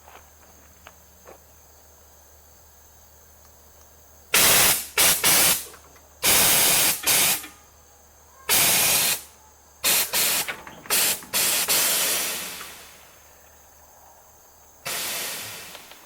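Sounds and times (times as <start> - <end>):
air suspension hissing bursts: 4.3 - 7.8, 8.5 - 13.4, 14.8 - 16.0.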